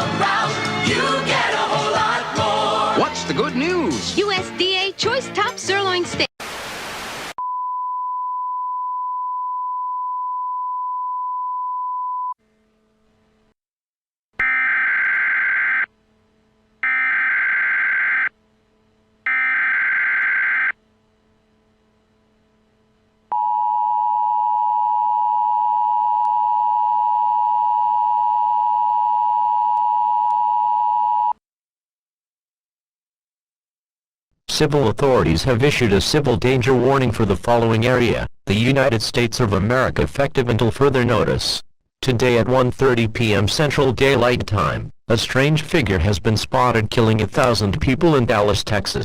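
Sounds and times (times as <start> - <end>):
steady single-pitch tone: 7.4 - 12.4, 19.3 - 20.8, 23.3 - 31.4.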